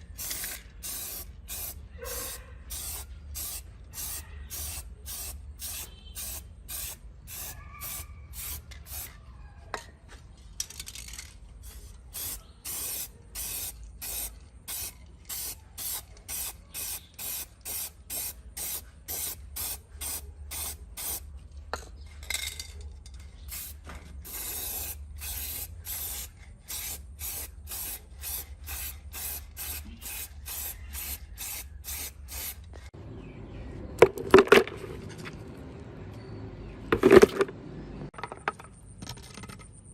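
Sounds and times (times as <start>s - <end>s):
paint spraying in hissing bursts: 0.2s - 9.1s, 11.6s - 21.2s, 23.5s - 32.6s.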